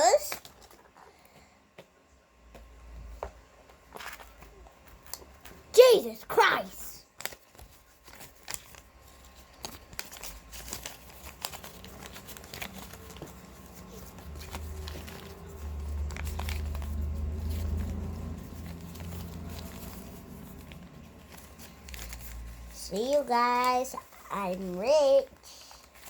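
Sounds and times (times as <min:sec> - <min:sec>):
paper bills rustling: 0:05.8 - 0:26.0.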